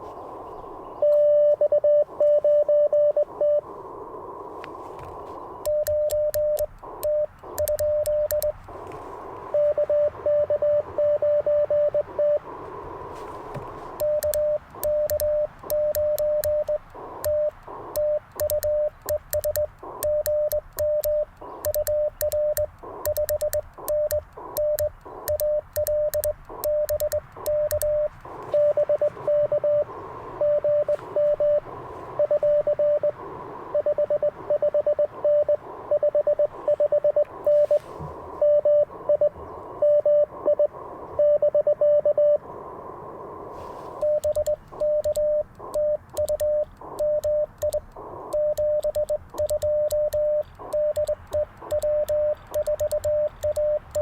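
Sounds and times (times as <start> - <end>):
receiver hiss: 0.0 - 54.0
morse code tone: 1.0 - 3.6, 5.6 - 8.8, 9.5 - 12.4, 13.9 - 42.4, 43.9 - 54.0
morse key contacts clicking: 5.6 - 9.0, 13.6 - 28.9, 44.0 - 54.0.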